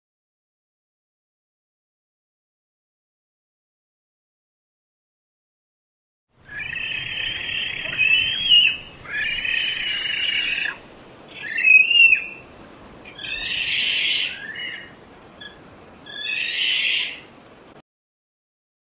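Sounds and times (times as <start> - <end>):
bird harsh raspy calls: 6.5 - 17.3.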